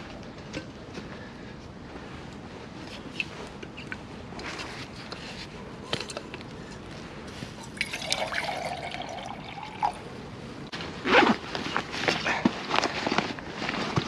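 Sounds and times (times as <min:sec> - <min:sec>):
water pouring into a pot: 0:07.8 - 0:10.0.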